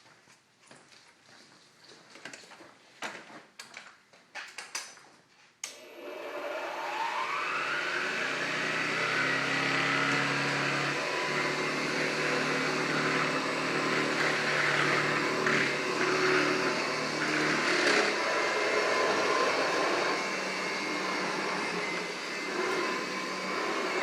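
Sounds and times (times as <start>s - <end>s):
vacuum cleaner motor whine: 5.7s - 24.0s.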